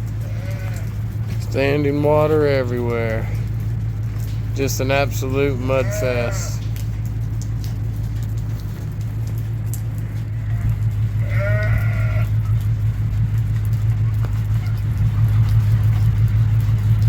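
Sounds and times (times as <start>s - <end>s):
farm animal bleating: 0.0s - 3.6s, 4.6s - 6.9s, 10.0s - 12.6s
steady low rumble: 0.0s - 17.0s.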